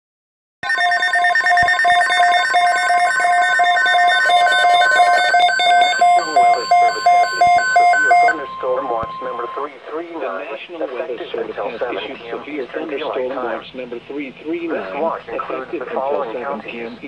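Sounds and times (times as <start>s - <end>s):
electronic alarm beeps: 0.6s - 9.8s
screeching digital alert tones: 0.6s - 9.8s
steady warning tone: 0.6s - 9.8s.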